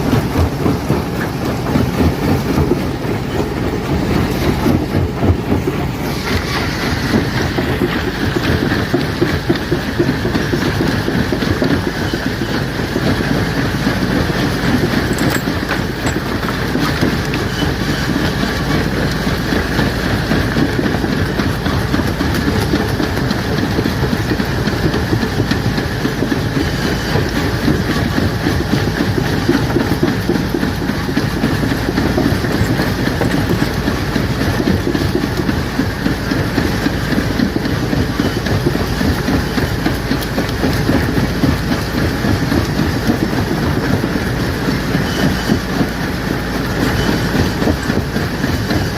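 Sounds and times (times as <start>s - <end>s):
rock crusher crushing stone: 14.7s - 18.4s.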